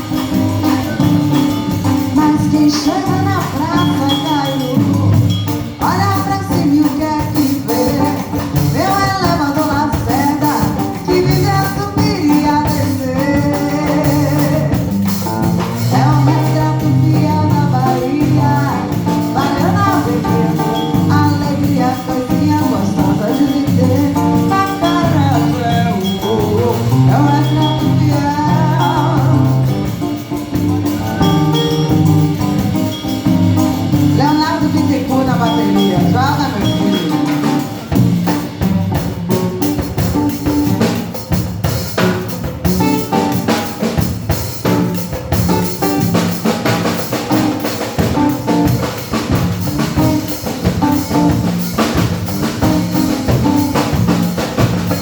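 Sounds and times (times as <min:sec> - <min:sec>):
person singing: 0:00.0 - 0:41.2
live band playing samba: 0:00.0 - 0:55.0.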